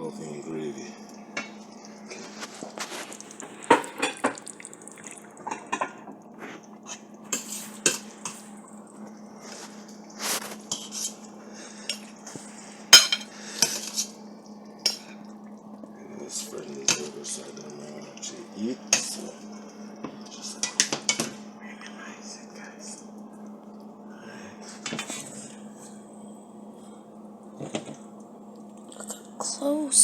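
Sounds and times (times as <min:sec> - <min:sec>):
steady low hum: 0:00.0 - 0:30.0
spoon clinking against pot: 0:13.0 - 0:13.3.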